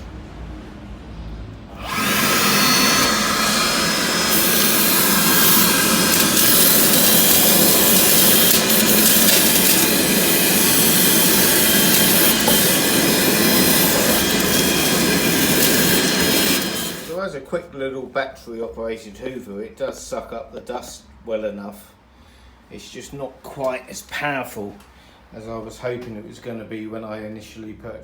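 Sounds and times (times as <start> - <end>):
cordless vacuum running: 1.7 - 17.2.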